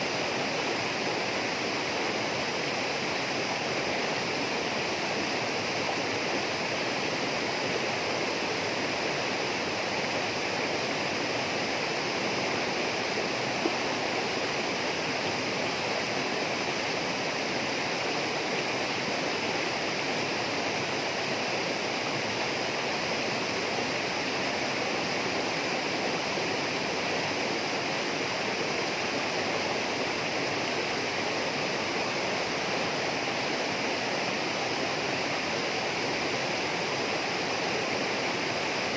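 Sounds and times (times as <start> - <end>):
running water rushing: 0.0 - 38.9.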